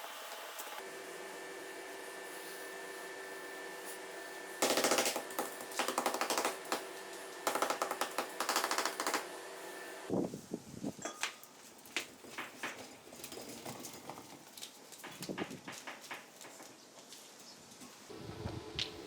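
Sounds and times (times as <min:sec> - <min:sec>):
machine tool motor running: 0:04.6 - 0:10.1.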